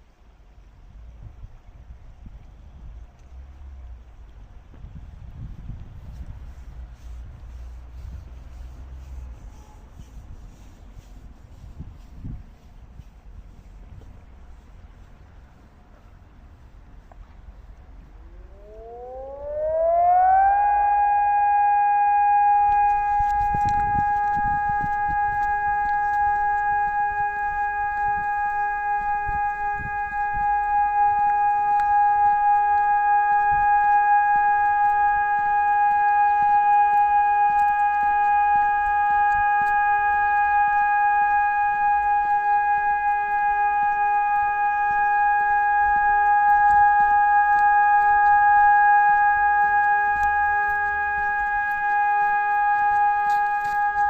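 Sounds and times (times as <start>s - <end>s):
electronic siren steady tone: 5.4s - 14.6s, 15.4s - 54.0s.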